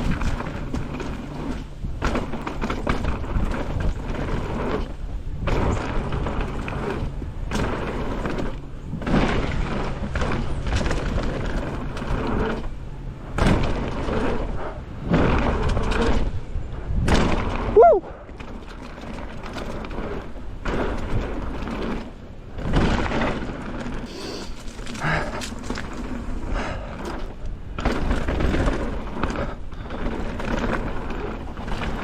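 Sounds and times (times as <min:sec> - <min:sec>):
bike rattling over rocks: 0:00.0 - 0:32.0
wind and tyres on dirt: 0:00.0 - 0:32.0.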